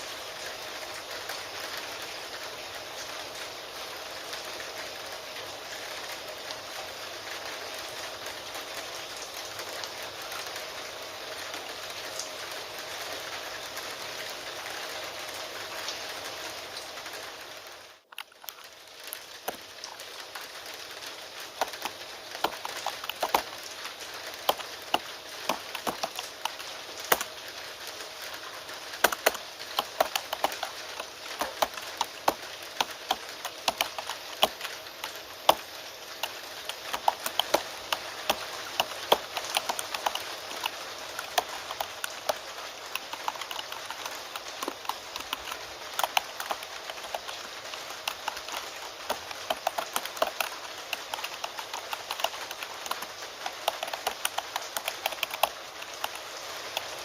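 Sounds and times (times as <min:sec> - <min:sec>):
steady rain: 0:00.0 - 0:57.0
keyboard typing: 0:21.4 - 0:27.5, 0:28.3 - 0:57.0.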